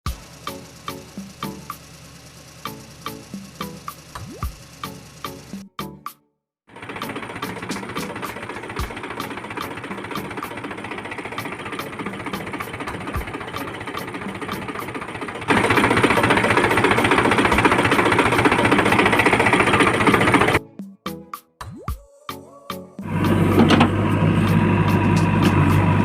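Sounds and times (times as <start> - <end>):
small motor running: 0.1 - 5.6, 6.7 - 20.6.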